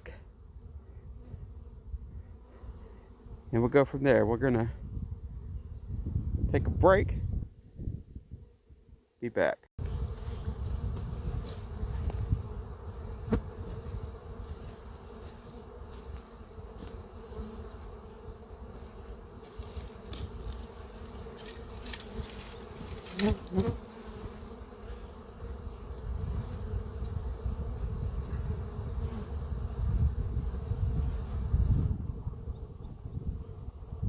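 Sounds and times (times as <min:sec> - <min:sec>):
bee flying close past: 0:00.0 - 0:03.5, 0:09.8 - 0:34.0
bees buzzing: 0:09.8 - 0:34.0.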